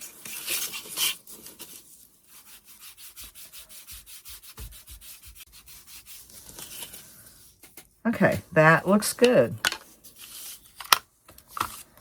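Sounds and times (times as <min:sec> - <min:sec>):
sanding strokes on wood: 0:02.4 - 0:06.4.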